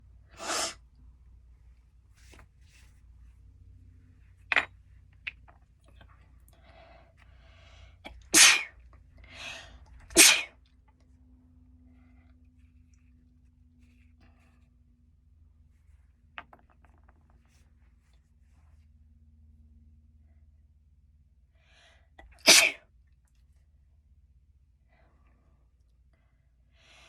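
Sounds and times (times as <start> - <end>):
person sneezing: 0.4 - 0.8, 8.1 - 8.7, 9.4 - 10.6, 22.4 - 22.8.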